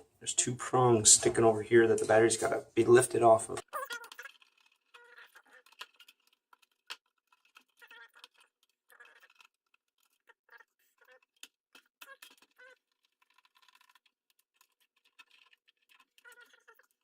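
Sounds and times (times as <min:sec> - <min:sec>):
plastic parts clicking and scraping: 0:03.6 - 0:17.0.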